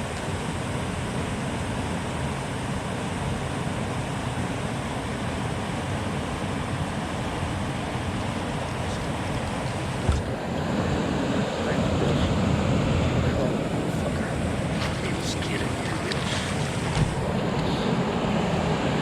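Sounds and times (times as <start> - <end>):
water lapping: 13.4 - 17.4.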